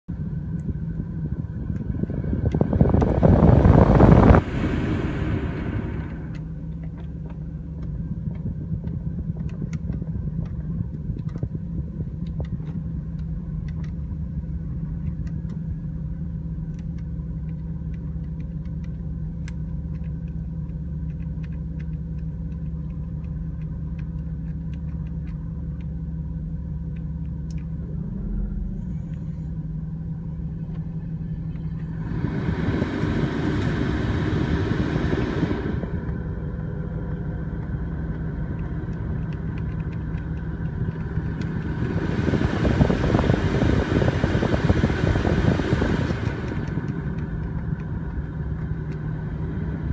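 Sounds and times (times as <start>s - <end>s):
car engine idling: 0.0s - 49.9s
rushing noise: 1.8s - 6.6s, 31.8s - 39.9s, 40.6s - 48.1s.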